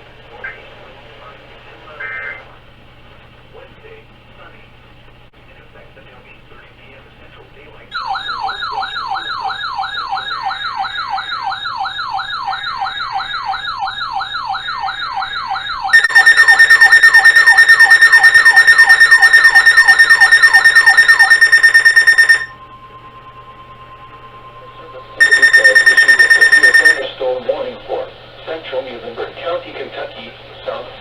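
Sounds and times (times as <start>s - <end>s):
falling electronic siren sweep: 8.0s - 27.0s
high pulsing alarm tone: 8.0s - 27.1s.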